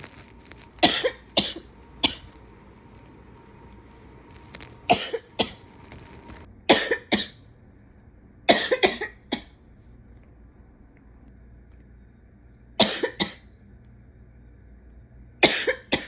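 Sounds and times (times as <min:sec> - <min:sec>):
person coughing: 0:00.8 - 0:02.3, 0:04.9 - 0:05.6, 0:06.7 - 0:07.4, 0:08.5 - 0:09.6, 0:12.8 - 0:13.4, 0:15.4 - 0:16.0.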